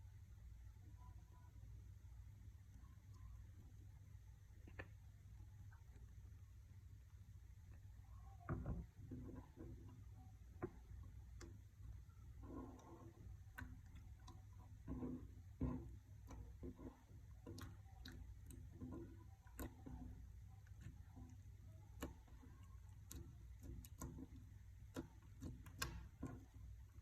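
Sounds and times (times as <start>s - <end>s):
faint steady hum: 0.0s - 27.0s.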